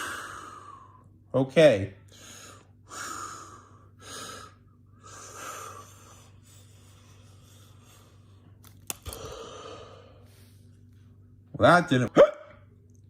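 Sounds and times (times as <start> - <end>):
person breathing deeply: 0.0 - 1.1, 2.1 - 10.8.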